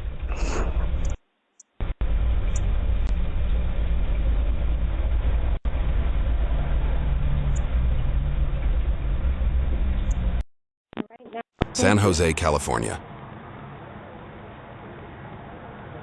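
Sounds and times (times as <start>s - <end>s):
low rumbling noise: 1.8s - 10.4s.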